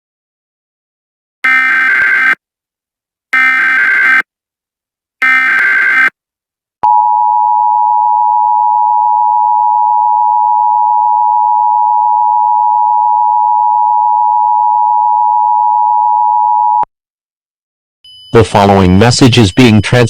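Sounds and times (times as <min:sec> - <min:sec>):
digital header burst: 0:01.4 - 0:02.4
two-tone attention signal: 0:18.1 - 0:20.0.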